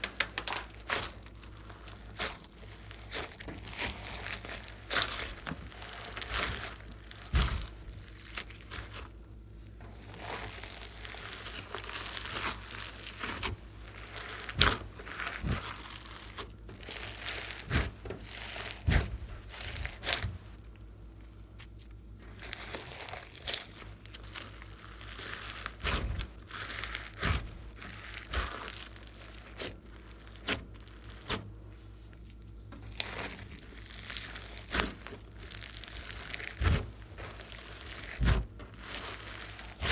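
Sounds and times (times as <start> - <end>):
slime squishing by hand: 0.0 - 39.9.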